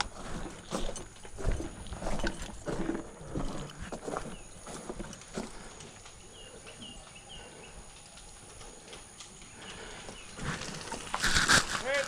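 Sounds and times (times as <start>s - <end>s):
outdoor background noise: 0.0s - 12.0s
bird chirping: 0.2s - 7.9s.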